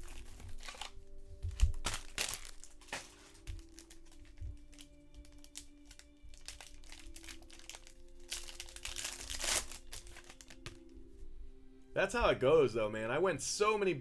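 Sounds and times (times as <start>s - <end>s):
card pack wrapper crinkling and tearing: 0.0s - 10.9s
faint background music: 0.0s - 14.0s.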